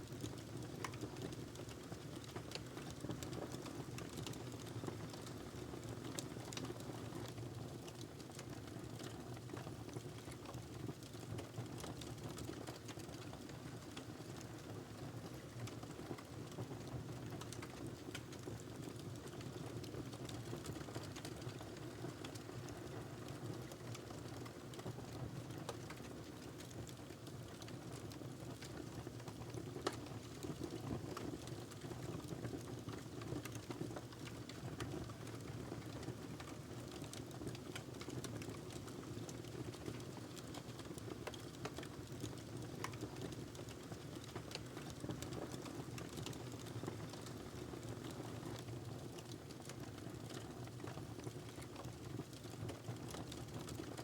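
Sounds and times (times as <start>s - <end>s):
logs crackling and popping: 25.6s - 27.7s, 28.4s - 54.0s.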